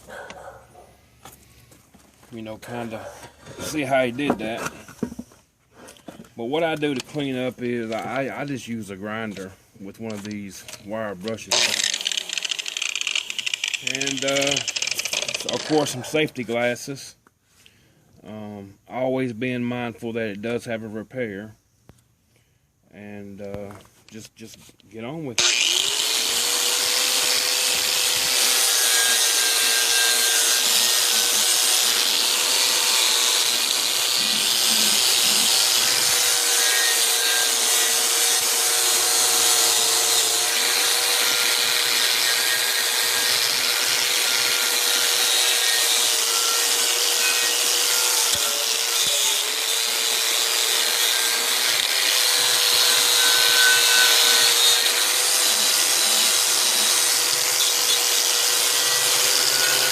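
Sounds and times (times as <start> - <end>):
wire brush grinder whining: 6.5 - 16.2, 25.4 - 59.9.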